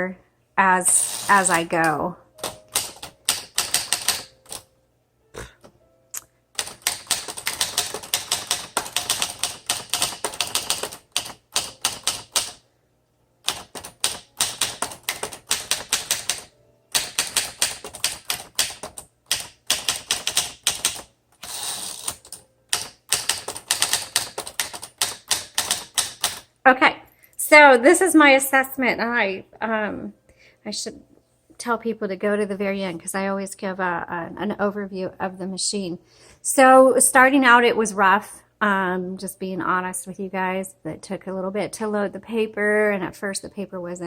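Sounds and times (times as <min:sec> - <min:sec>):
manual typewriter typing: 0:00.9 - 0:04.7, 0:06.6 - 0:12.6, 0:13.4 - 0:26.5.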